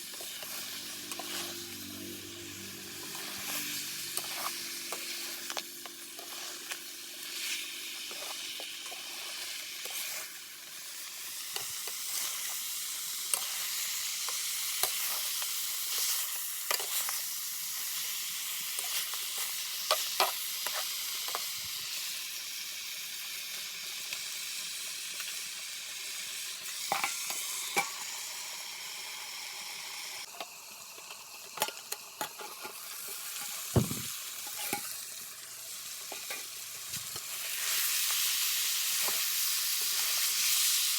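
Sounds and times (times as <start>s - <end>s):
curry sizzling in a pan: 0.0s - 40.9s
spoon scraping and knocking pan: 3.1s - 6.8s, 18.8s - 21.5s, 33.4s - 34.9s.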